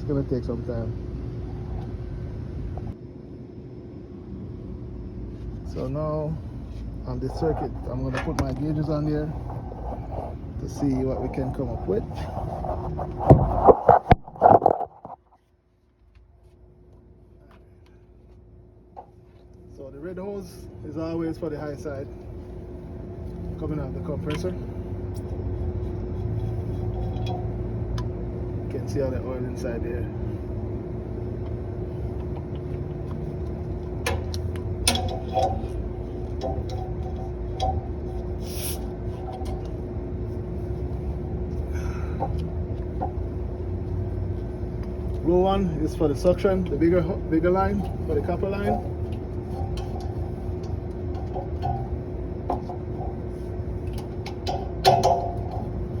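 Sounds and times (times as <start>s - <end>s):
air conditioning unit humming: 0.0s - 56.0s
hoses and fittings clicking: 24.2s - 28.2s, 31.4s - 39.8s, 40.6s - 45.6s, 46.2s - 56.0s.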